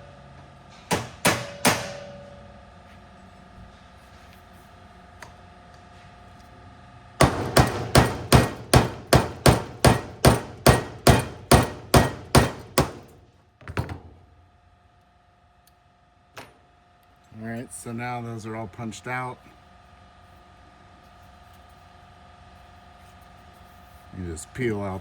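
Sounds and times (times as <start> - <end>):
hammer striking metal punch: 0.9 - 2.5, 7.2 - 13.2.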